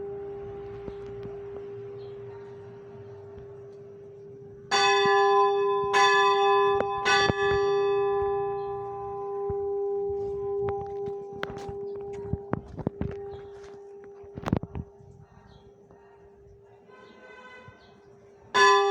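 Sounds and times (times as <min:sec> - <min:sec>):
metal bell ringing: 0:04.7 - 0:12.1.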